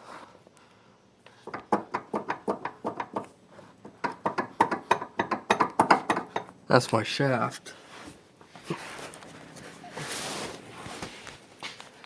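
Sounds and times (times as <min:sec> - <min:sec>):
metallic clanks and knocks: 0:01.4 - 0:06.6.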